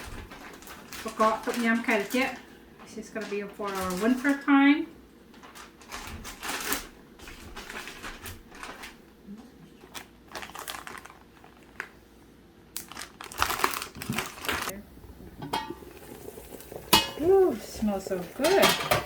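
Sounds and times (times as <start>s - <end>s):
plastic bags crinkling: 0.0s - 12.0s, 12.8s - 14.8s.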